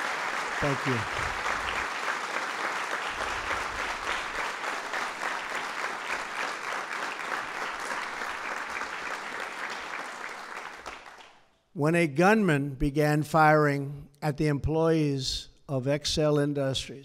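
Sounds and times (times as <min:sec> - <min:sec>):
audience applauding: 0:00.0 - 0:11.4.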